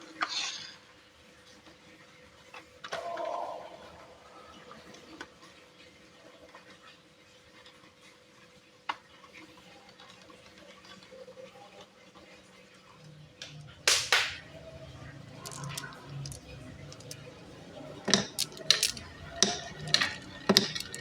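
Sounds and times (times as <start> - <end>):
marbles rolling down wooden run: 13.5 - 21.0.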